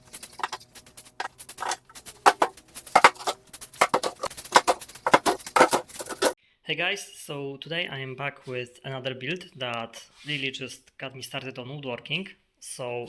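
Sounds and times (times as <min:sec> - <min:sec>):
sharp knocks and clatter: 0:00.0 - 0:06.4.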